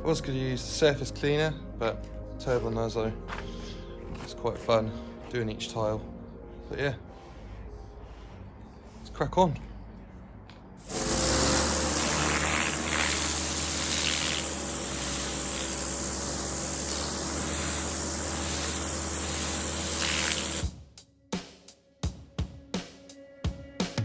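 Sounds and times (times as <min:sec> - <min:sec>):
pressure washer spraying water: 0:10.8 - 0:20.7
pump hum: 0:10.8 - 0:20.7.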